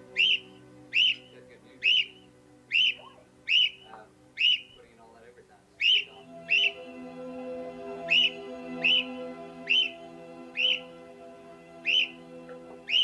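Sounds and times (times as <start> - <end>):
small bird chirping: 0.0 - 5.0, 5.8 - 6.8, 8.0 - 11.0, 11.8 - 13.0
soft background music: 0.0 - 13.0.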